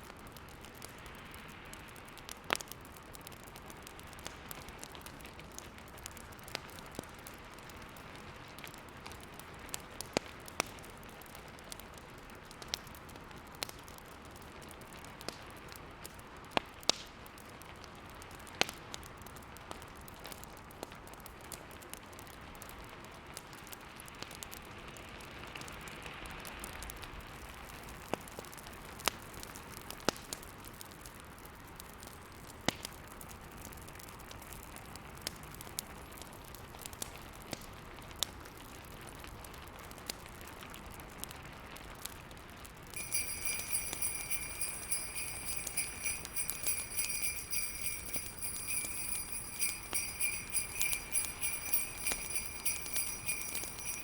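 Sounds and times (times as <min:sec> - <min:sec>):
steady hiss of fire: 0:00.0 - 0:41.3
wood fire crackling: 0:42.9 - 0:54.0.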